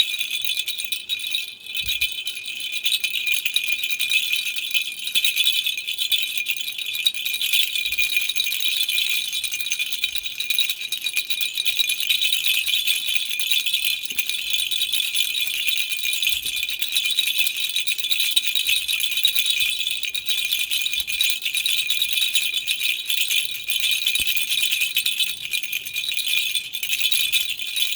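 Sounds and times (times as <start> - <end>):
toy rattle shaken: 12.1 - 27.9.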